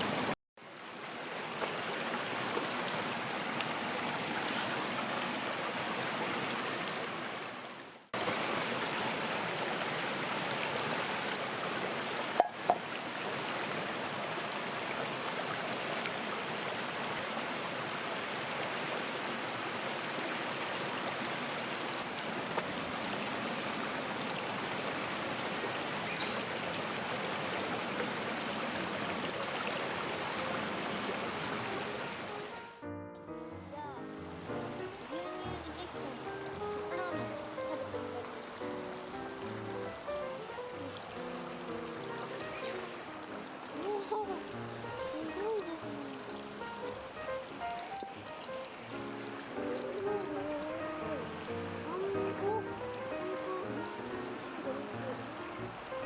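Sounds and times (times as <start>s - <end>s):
river water rushing: 0.0s - 32.9s, 33.7s - 56.0s.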